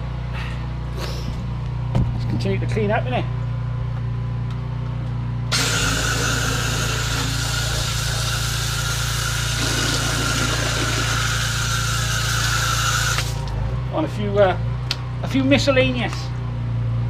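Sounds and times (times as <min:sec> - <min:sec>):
high-pressure water jet hissing: 0:05.5 - 0:13.5
drain jetting engine running: 0:05.5 - 0:13.7.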